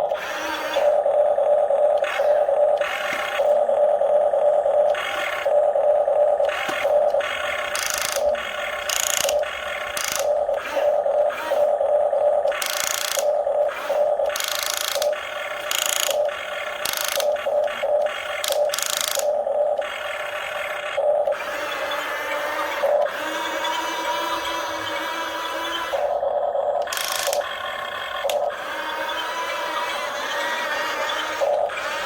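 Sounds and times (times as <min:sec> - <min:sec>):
toy excavator motors whirring: 0:00.0 - 0:32.0.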